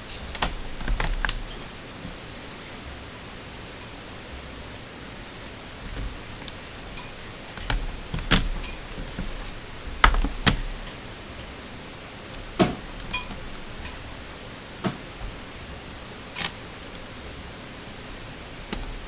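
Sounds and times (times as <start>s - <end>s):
steady hiss: 0.0s - 19.0s
plastic parts clicking and knocking: 7.5s - 10.8s.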